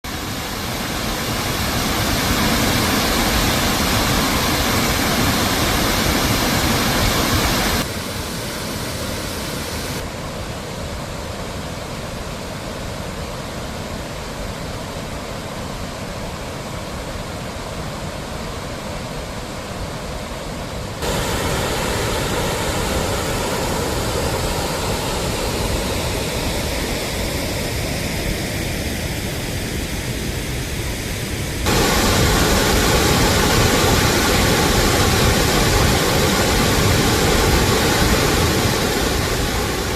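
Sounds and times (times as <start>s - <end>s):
heavy falling water rushing: 0.0s - 10.2s, 21.0s - 39.9s.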